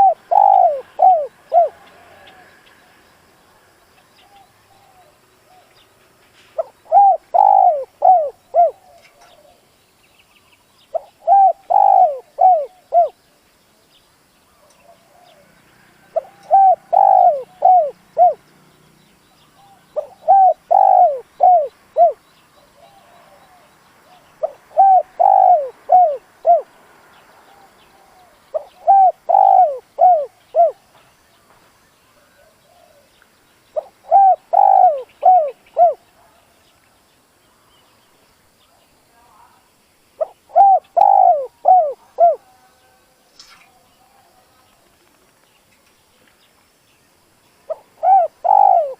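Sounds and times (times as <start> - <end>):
dove cooing: 0.0 - 2.6, 6.6 - 9.7, 10.9 - 13.2, 14.6 - 18.5, 19.4 - 26.8, 27.5 - 30.8, 32.2 - 33.1, 33.8 - 36.4, 40.2 - 42.6, 47.7 - 48.9.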